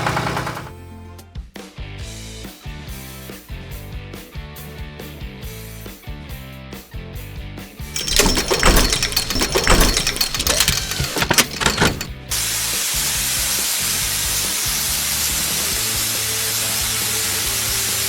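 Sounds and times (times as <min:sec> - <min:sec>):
clattering knocking work noise: 0:08.0 - 0:12.2.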